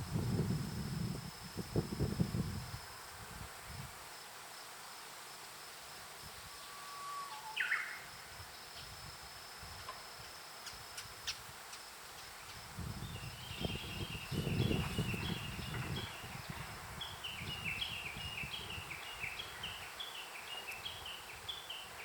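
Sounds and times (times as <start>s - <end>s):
bird singing: 6.5s - 8.9s, 12.4s - 22.0s.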